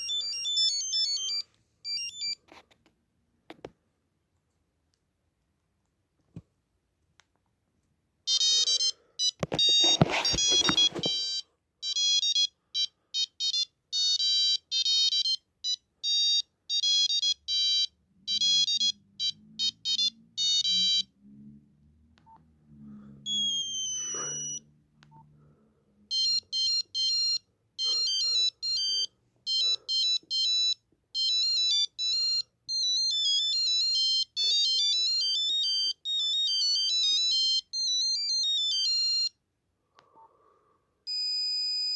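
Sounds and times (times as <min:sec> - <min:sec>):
electronic ringtone melodies: 0:00.0 - 0:02.4, 0:08.3 - 0:21.2, 0:23.3 - 0:24.7, 0:26.1 - 0:39.4, 0:41.1 - 0:41.9.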